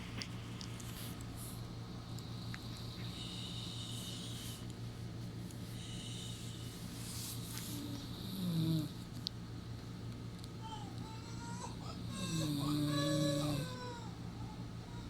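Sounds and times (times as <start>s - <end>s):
person snoring: 8.2s - 8.9s, 12.1s - 13.8s.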